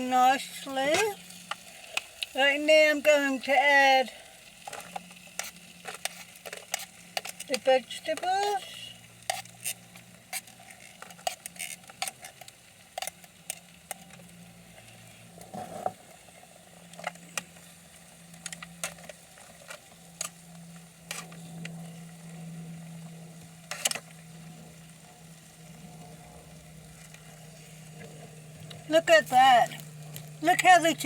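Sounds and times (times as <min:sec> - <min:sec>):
faint sizzling: 0:00.0 - 0:31.0
low hum: 0:13.5 - 0:31.0.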